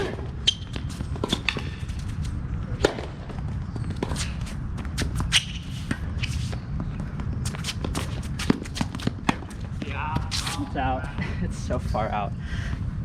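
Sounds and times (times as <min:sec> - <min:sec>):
footsteps on court: 0:00.6 - 0:11.4
racket striking tennis ball: 0:02.8 - 0:03.2.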